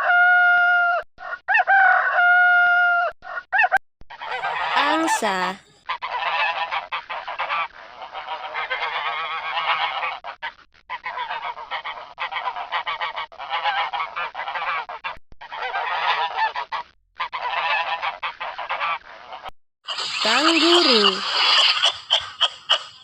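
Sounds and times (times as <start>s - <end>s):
geese honking: 19.9s - 23.0s.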